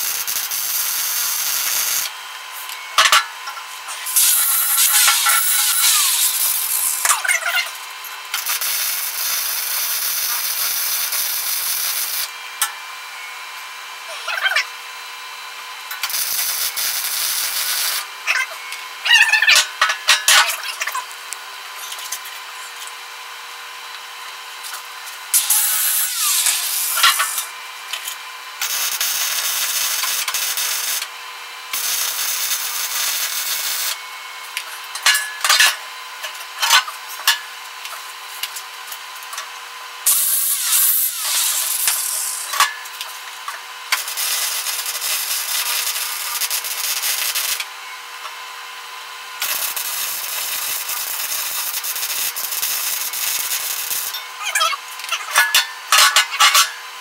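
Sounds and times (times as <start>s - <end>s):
arc welding crackling hiss: 0.0s - 2.8s, 3.8s - 12.3s, 16.0s - 18.1s, 25.3s - 27.6s, 28.6s - 31.1s, 31.7s - 34.0s, 40.0s - 43.2s, 43.9s - 47.7s, 49.4s - 54.2s.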